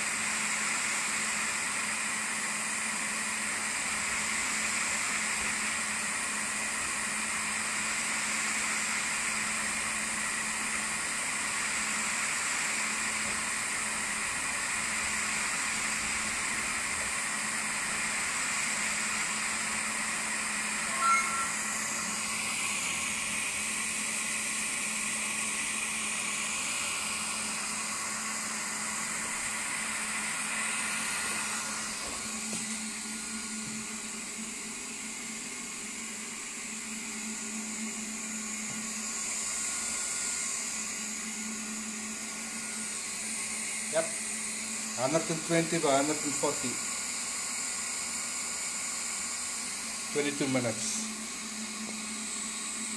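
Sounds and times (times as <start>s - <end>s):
laser engraver whirring: 0.0s - 52.9s
short high beep: 20.8s - 21.8s.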